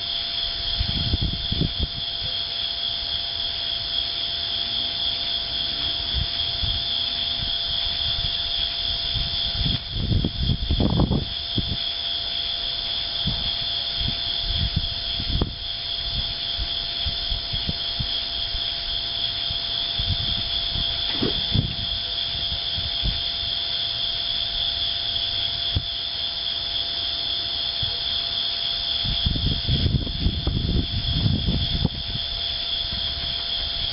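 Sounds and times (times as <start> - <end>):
insects chirping: 0.0 - 33.9
low thumps and rumbles: 20.0 - 23.2.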